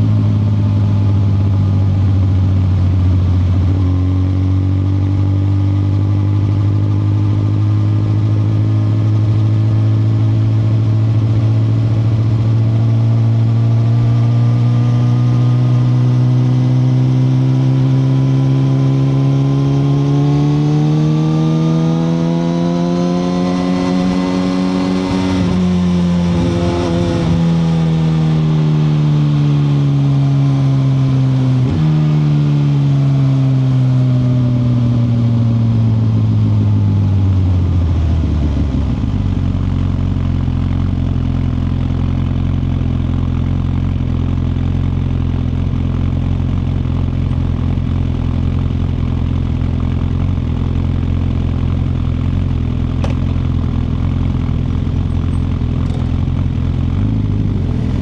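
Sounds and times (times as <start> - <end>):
motorcycle engine slowing down: 34.6 - 58.0.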